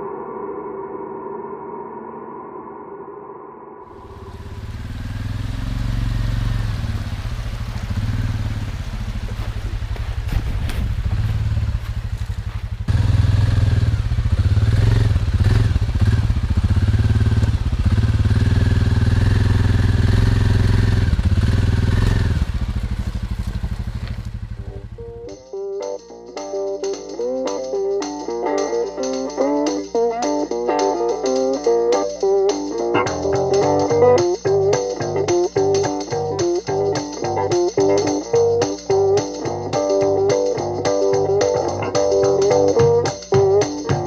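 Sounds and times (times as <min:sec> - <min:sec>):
car engine rumbling under load: 0:03.9 - 0:25.4.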